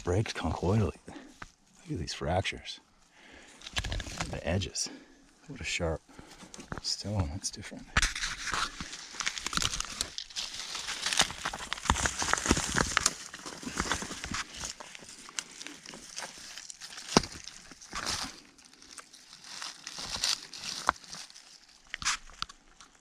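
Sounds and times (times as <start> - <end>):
loose rocks crunching and clattering: 3.5 - 4.7, 7.9 - 23.0.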